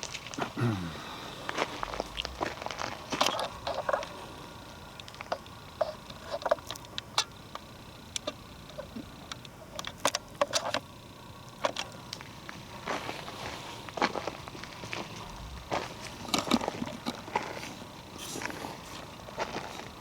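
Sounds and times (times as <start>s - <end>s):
footsteps on twigs and leaves: 1.4s - 4.4s, 12.2s - 20.0s.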